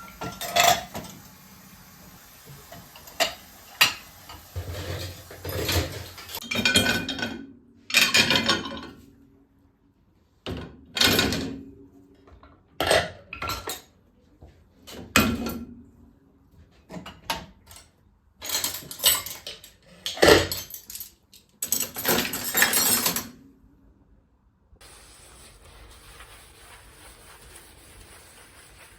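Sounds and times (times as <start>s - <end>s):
dishes and cutlery clinking: 0.0s - 1.2s, 3.0s - 9.0s, 17.1s - 23.3s.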